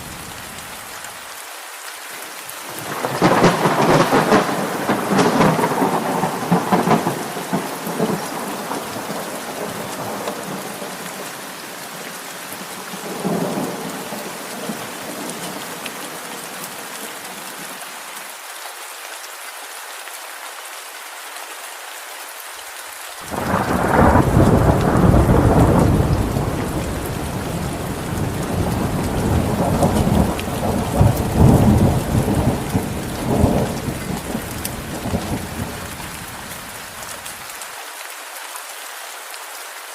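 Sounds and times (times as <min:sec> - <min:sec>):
heavy rain: 0:00.0 - 0:39.9
loud thunderclap: 0:02.8 - 0:10.6, 0:23.3 - 0:35.8
thunder rumbling: 0:02.8 - 0:11.2, 0:23.3 - 0:36.7.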